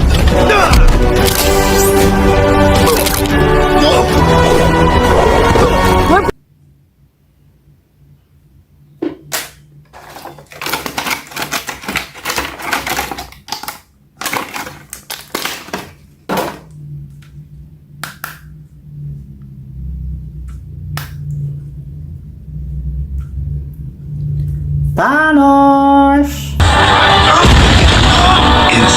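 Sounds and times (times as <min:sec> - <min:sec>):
low steady hum: 0:06.3 - 0:26.6
plastic packaging crinkling: 0:09.9 - 0:16.6.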